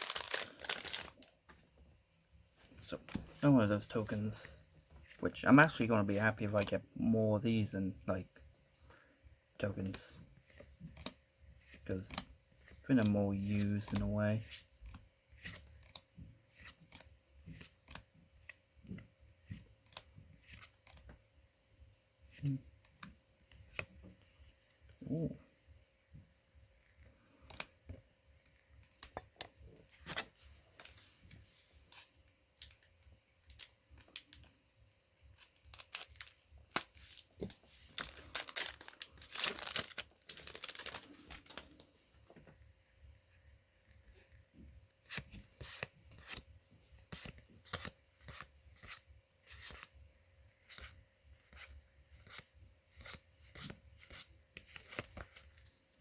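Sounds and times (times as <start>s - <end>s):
cards clicking and rustling: 0.0s - 1.3s, 35.4s - 41.8s
foil wrapper tearing and crinkling: 0.0s - 1.3s, 38.0s - 41.6s.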